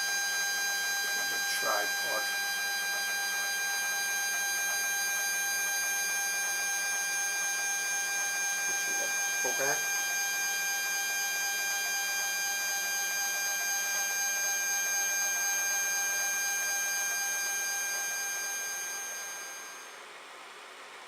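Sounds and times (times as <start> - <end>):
stepper motors whining: 1.1 - 2.4.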